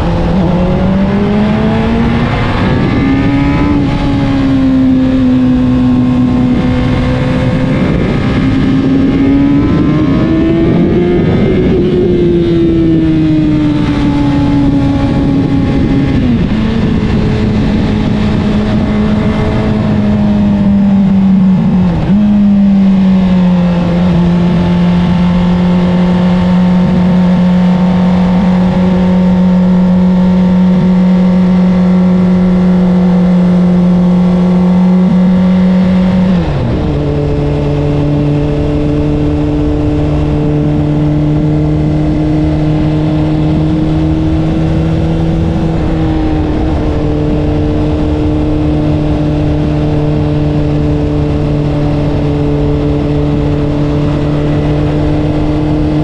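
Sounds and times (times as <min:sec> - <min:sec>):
motorcycle engine cruising: 0:00.0 - 0:56.0.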